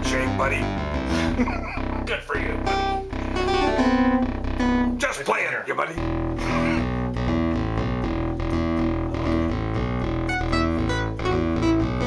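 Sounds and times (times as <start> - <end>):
synthesizer bass riff: 0.0 - 5.2, 6.0 - 12.0.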